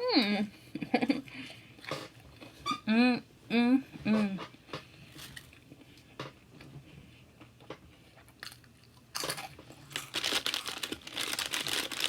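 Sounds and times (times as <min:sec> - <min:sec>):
crunchy food being chewed: 0:07.4 - 0:12.0.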